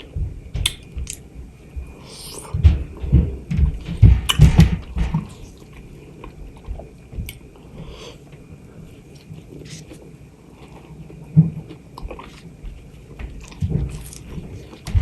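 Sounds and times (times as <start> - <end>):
chewing juicy mango: 8.8 - 14.9.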